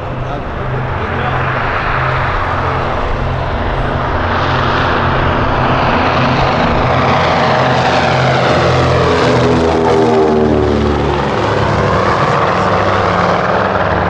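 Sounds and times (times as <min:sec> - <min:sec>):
propeller aircraft engines droning: 0:00.0 - 0:14.0.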